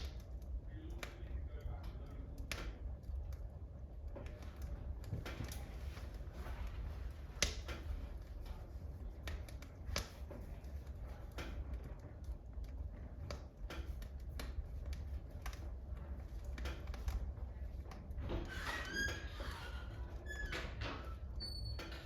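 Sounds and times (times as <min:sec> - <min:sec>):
sharp pops of fire: 0:00.0 - 0:01.2, 0:02.3 - 0:06.5, 0:07.1 - 0:08.3, 0:09.2 - 0:18.2
low steady rumble: 0:00.0 - 0:22.0
wood fire crackling: 0:00.0 - 0:22.0.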